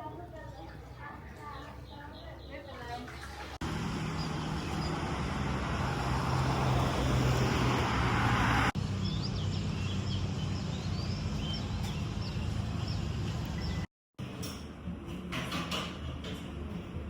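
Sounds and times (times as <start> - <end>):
small birds chirping: 0.0 - 6.8, 8.8 - 13.9
vehicle running with rushing noise: 3.6 - 13.6.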